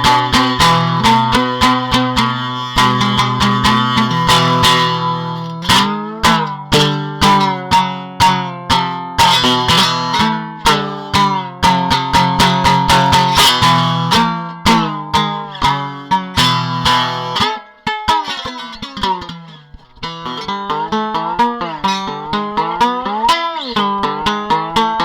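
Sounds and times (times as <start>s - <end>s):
guitar picked notes and chords: 0.0s - 25.0s.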